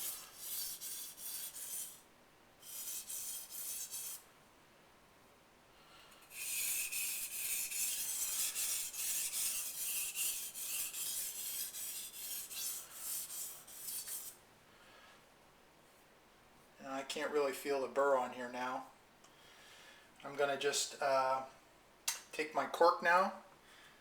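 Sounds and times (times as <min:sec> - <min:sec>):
knife scraping on whetstone: 0:00.0 - 0:02.0, 0:02.6 - 0:04.2, 0:06.3 - 0:14.4.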